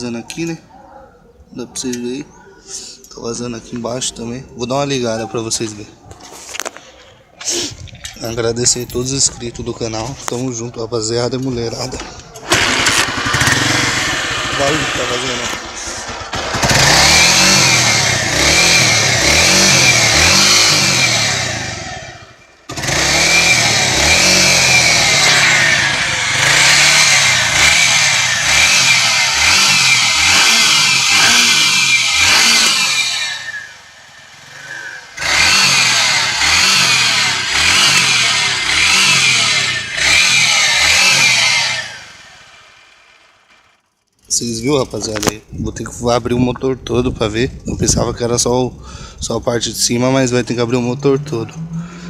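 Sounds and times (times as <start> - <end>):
motorcycle engine revving: 11.9 - 45.3, 50.4 - 52.0.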